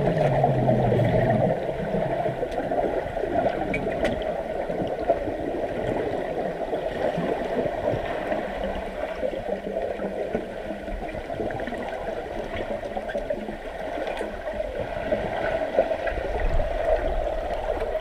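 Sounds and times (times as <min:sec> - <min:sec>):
pool water churning and gurgling: 0:00.0 - 0:18.0.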